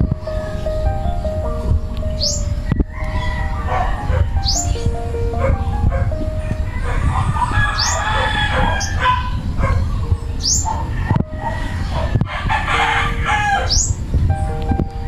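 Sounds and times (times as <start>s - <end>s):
rooster crowing: 2.7s - 4.4s, 6.7s - 9.4s, 10.7s - 13.8s.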